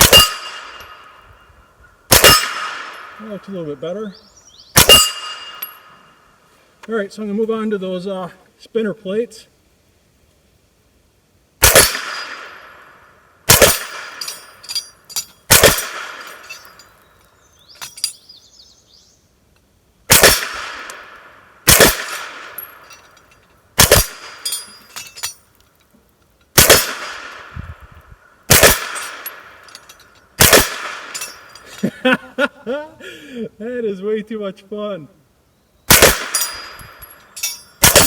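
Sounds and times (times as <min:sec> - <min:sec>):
suppressed gunshots: 0:00.0 - 0:00.9, 0:02.1 - 0:03.2, 0:04.8 - 0:05.5, 0:11.6 - 0:12.8, 0:13.5 - 0:14.2, 0:15.5 - 0:16.4, 0:20.1 - 0:22.6, 0:23.8 - 0:24.4, 0:26.6 - 0:27.5, 0:28.5 - 0:29.5, 0:30.4 - 0:31.2, 0:35.9 - 0:36.6, 0:37.8 - 0:38.0
steel plates clanging: 0:00.0 - 0:01.2, 0:04.8 - 0:06.1, 0:13.6 - 0:17.0, 0:17.7 - 0:18.3, 0:21.8 - 0:25.7, 0:28.6 - 0:31.9, 0:36.2 - 0:38.0.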